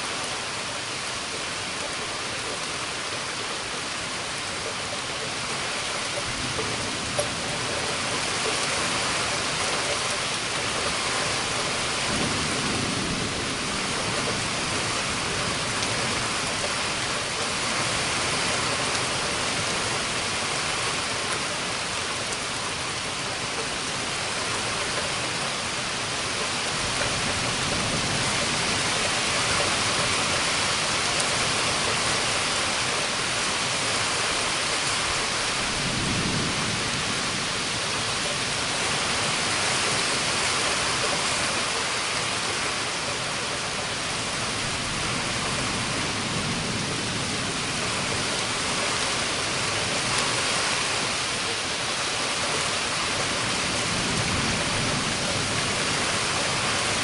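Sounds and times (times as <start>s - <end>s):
heavy rain: 0.0s - 57.0s
low rumbles of thunder: 10.6s - 17.1s, 34.9s - 40.0s.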